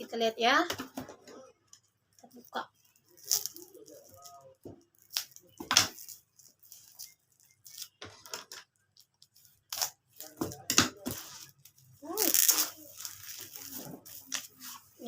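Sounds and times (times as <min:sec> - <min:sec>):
wrapping being torn: 0:02.2 - 0:08.0, 0:08.9 - 0:15.0.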